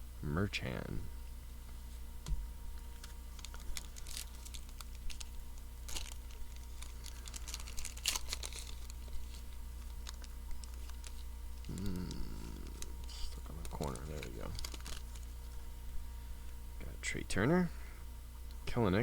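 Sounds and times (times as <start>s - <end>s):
foil wrapper crinkling and tearing: 2.8s - 15.6s.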